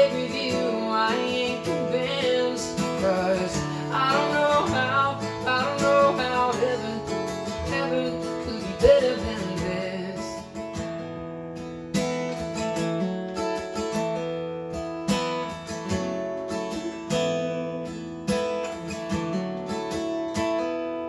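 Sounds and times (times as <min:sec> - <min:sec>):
person singing: 0:00.0 - 0:10.6
strummed acoustic guitar: 0:00.0 - 0:21.0.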